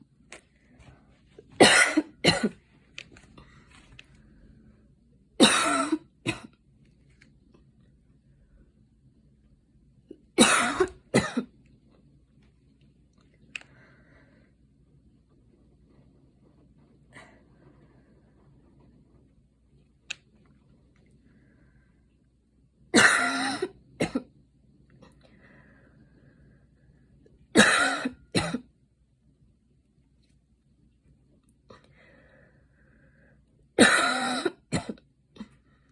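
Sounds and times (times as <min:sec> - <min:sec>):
woman coughing: 0:01.6 - 0:02.6, 0:05.4 - 0:06.5, 0:10.4 - 0:11.5, 0:23.0 - 0:24.3, 0:27.6 - 0:28.7, 0:33.8 - 0:35.5.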